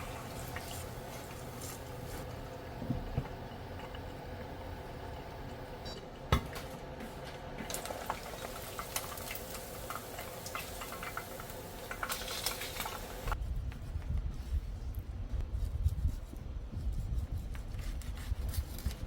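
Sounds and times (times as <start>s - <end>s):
food sizzling in a pan: 0.0s - 2.2s, 7.7s - 13.4s.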